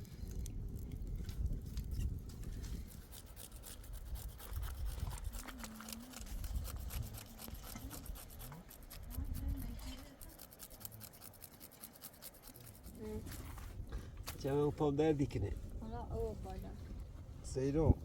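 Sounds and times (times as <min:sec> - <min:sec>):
scratching and rubbing clicks: 0:00.4 - 0:13.5.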